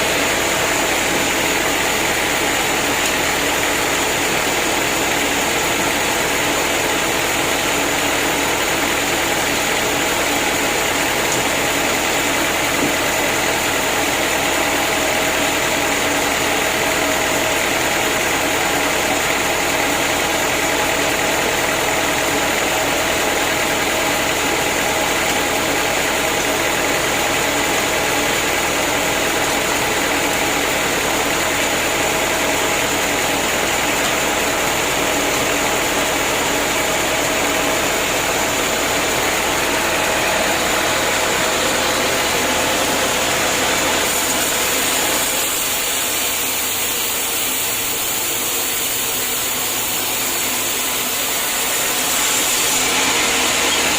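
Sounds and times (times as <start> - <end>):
sawmill engine running: 0.0 - 53.9.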